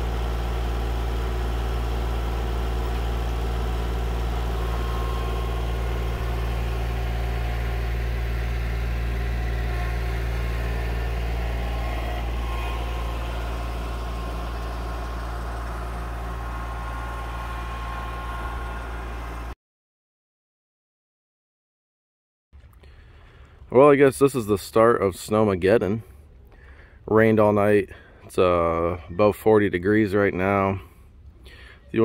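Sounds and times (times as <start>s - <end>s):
vehicle engine running steadily: 0.0s - 19.6s, 22.6s - 23.7s, 30.0s - 32.0s.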